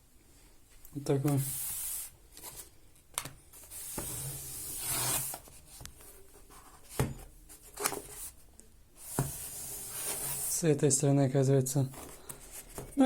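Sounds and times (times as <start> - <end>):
cardboard scraping: 3.6 - 5.8, 9.0 - 10.6.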